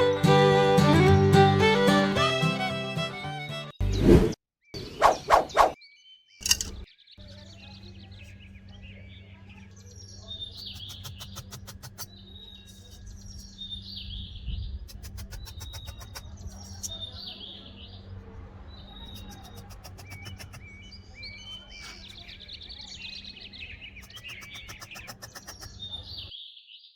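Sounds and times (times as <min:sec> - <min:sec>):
bird chirping: 0:03.4 - 0:26.9
rapid sharp clicks: 0:10.7 - 0:12.1, 0:14.9 - 0:16.3, 0:19.2 - 0:20.7, 0:24.0 - 0:25.8.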